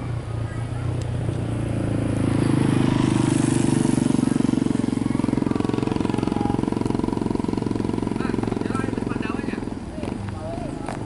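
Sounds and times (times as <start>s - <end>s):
bus diesel engine rumbling: 0.0s - 11.0s.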